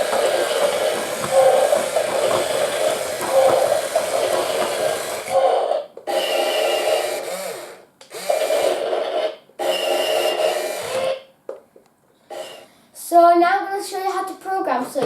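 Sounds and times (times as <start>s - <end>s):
toy robot rasping mechanical noise: 0.0s - 11.2s, 12.3s - 12.7s.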